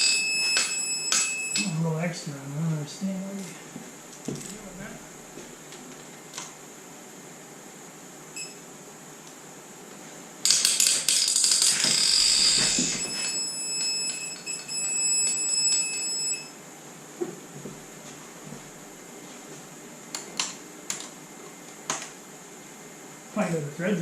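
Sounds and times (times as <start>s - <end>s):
electronic beep: 0.0s - 1.8s, 11.9s - 16.6s
ratchet clicking: 10.4s - 12.8s.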